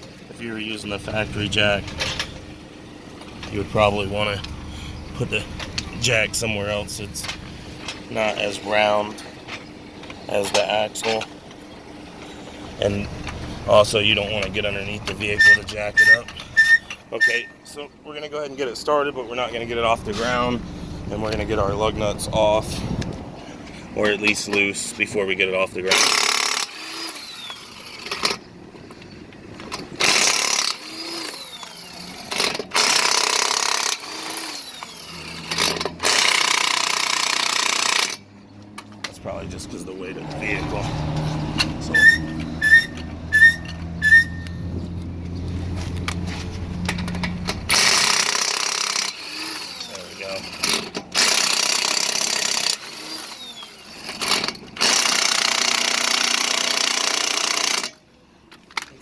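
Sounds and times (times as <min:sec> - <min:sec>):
impact wrench hammering: 0:15.1 - 0:17.6, 0:32.3 - 0:38.2, 0:47.7 - 0:49.9.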